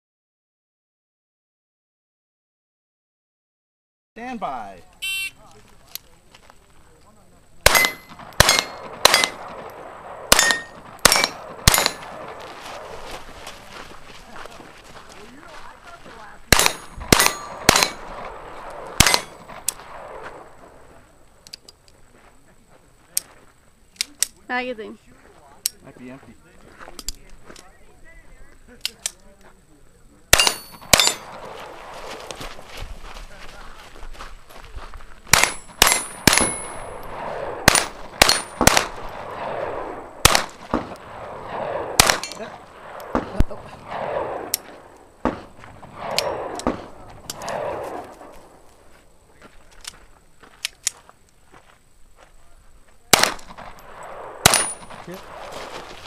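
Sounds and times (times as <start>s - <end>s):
pistol shots: 7.6s - 13.2s, 16.5s - 20.8s, 30.3s - 32.3s, 35.3s - 48.6s, 53.1s - 56.0s.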